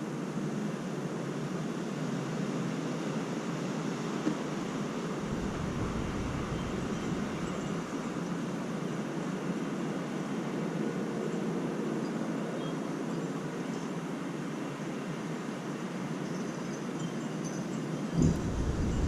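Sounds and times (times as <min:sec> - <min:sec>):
strong gusty wind: 0:04.4 - 0:08.8, 0:18.2 - 0:19.0.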